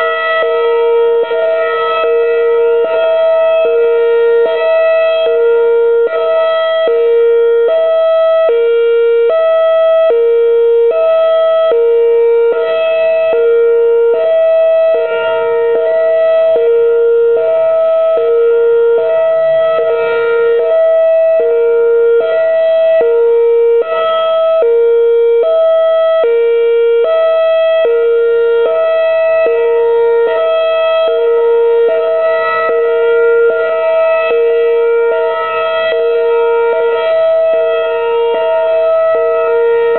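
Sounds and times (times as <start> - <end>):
outdoor warning siren two-note chord: 0.0 - 39.9.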